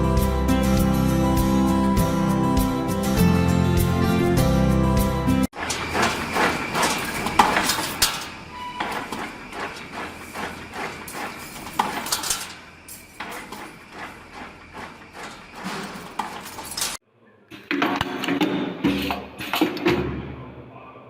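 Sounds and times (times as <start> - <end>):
knocks and metallic clinks: 5.6 - 17.0.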